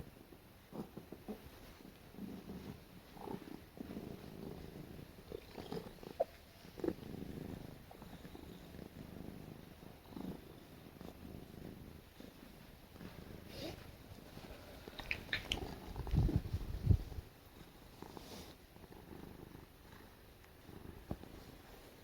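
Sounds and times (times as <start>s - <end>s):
cat purring: 0.0s - 22.0s.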